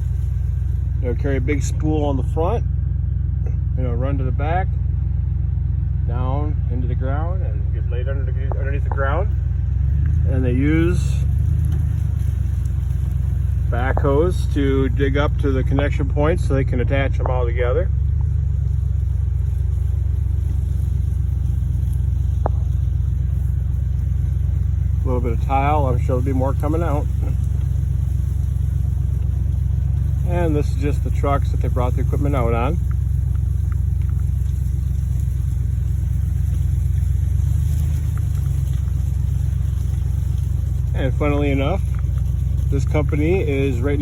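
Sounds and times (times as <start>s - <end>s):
engine rumbling: 0.0s - 44.0s.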